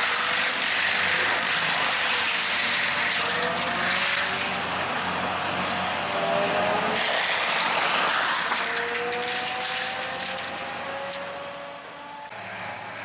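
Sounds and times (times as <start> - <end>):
wood shredder grinding wood: 0.0 - 12.4.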